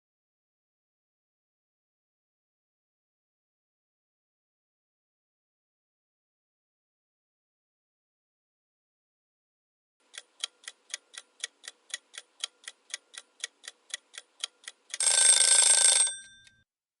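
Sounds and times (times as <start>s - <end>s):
timer ticking fast: 10.0s - 16.6s
loud ringing alarm: 15.0s - 16.5s.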